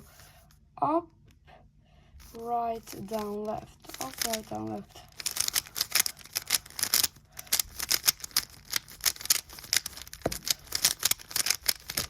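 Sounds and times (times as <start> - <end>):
puzzle cube plastic clicks: 2.8 - 12.0.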